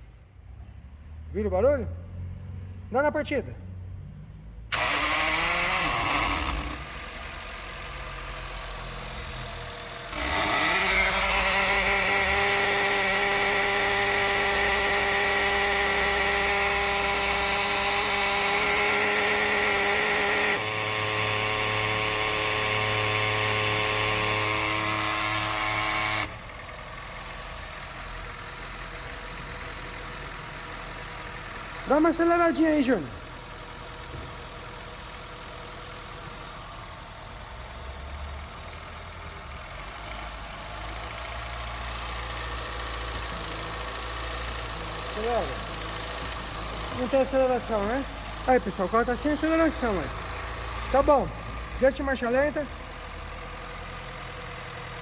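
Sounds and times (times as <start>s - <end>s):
throttle body whine and grind: 4.7s - 32.7s, 40.2s - 55.0s
car engine running: 4.7s - 55.0s.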